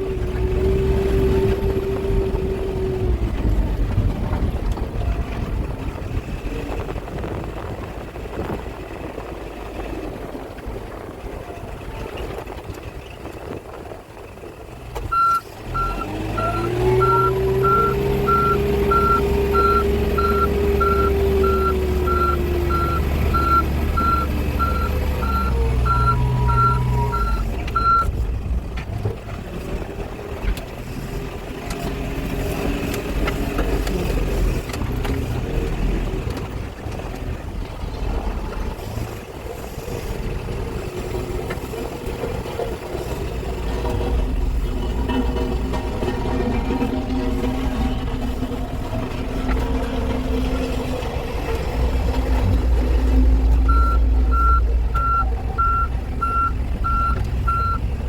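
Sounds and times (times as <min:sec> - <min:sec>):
diesel engine running: 0:00.0 - 0:58.0
reversing alarm beeping: 0:15.1 - 0:28.1, 0:53.7 - 0:57.8.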